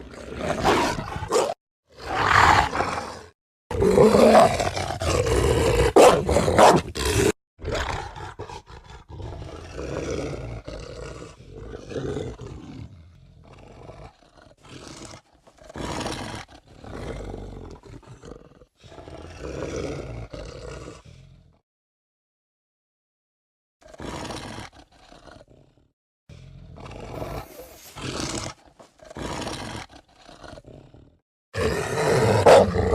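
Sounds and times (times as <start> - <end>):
monster growls and snarls: 0.0 - 21.6, 23.8 - 32.9
monster roar: 1.9 - 8.5, 26.6 - 28.6, 30.5 - 32.9.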